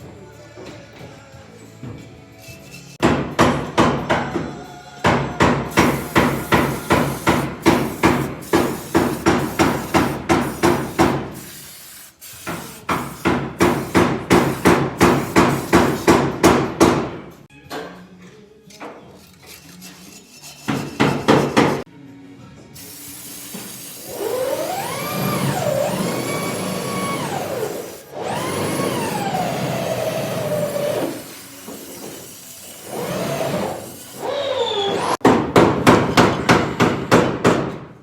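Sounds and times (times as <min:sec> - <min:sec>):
rapid hammer blows: 0:05.0 - 0:11.4, 0:12.4 - 0:17.2, 0:20.7 - 0:21.8.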